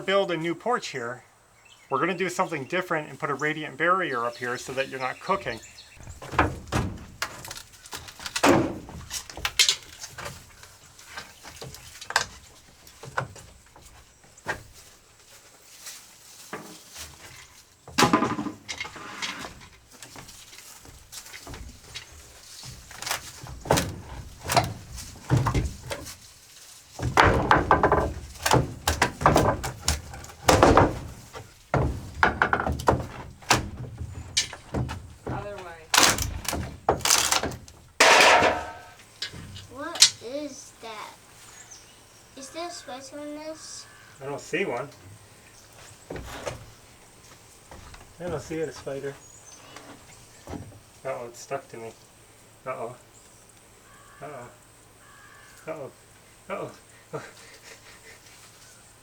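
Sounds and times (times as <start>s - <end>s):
wood knocking on wood: 4.6s - 14.8s, 16.5s - 26.2s, 26.9s - 40.3s.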